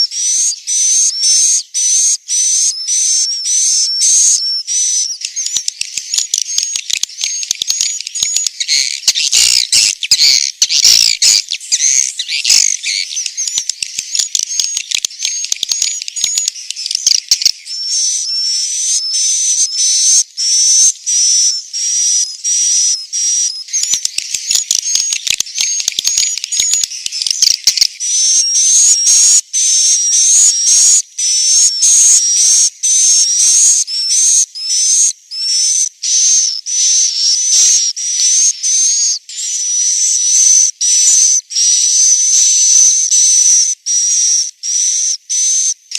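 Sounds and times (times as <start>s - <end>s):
swiftlets chirping: 5.2s - 17.5s.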